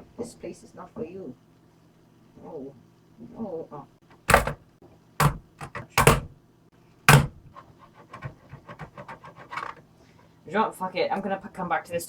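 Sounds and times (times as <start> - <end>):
hammer blows on laptop: 4.3 - 4.6, 5.2 - 6.3, 7.1 - 9.1.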